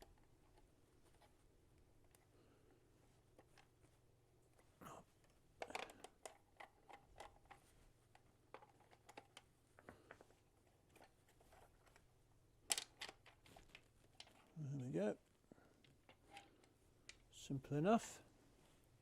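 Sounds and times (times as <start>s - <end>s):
plastic housing clacking open: 12.7s - 14.4s.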